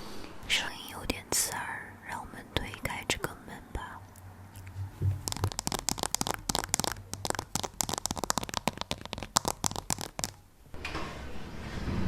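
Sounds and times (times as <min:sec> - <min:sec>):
fingers scratching plant leaves: 0:04.5 - 0:10.4.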